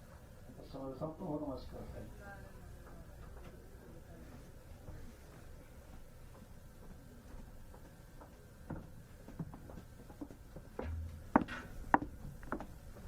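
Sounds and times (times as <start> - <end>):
low hum: 10.8 - 13.0.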